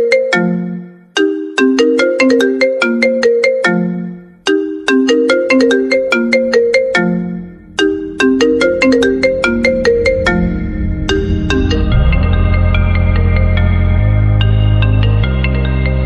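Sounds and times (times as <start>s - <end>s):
marimba-like ringtone melody: 0.0s - 16.0s
low bass layer: 6.5s - 15.4s.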